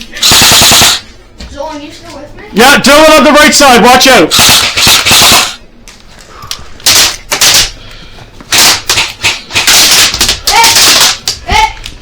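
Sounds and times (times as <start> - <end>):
airsoft guns firing bursts: 0.2 - 1.1, 4.3 - 5.6, 8.5 - 11.3.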